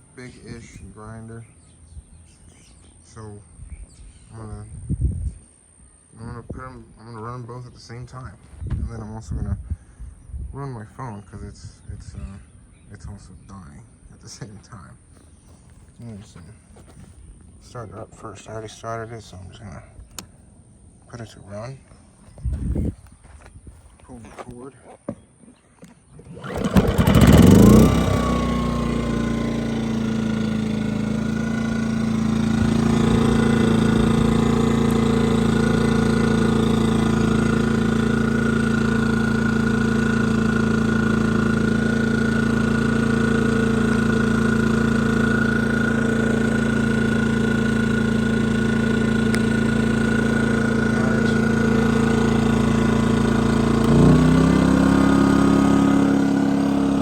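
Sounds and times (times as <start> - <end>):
generator engine running: 15.1 - 18.2, 26.2 - 57.0.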